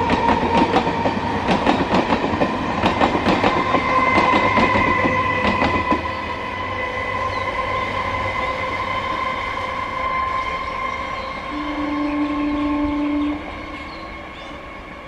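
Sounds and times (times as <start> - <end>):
wheels clicking over rail joints: 0.0 - 6.1
electric train steady high tone: 0.0 - 15.0
locomotive horn: 3.8 - 14.9.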